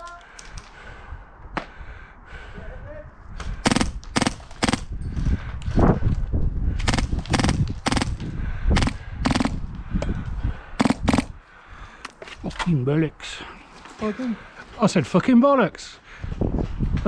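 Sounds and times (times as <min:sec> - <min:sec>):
airsoft guns firing single shots: 0:03.6 - 0:04.9, 0:06.9 - 0:08.2, 0:08.8 - 0:09.6, 0:10.8 - 0:11.3.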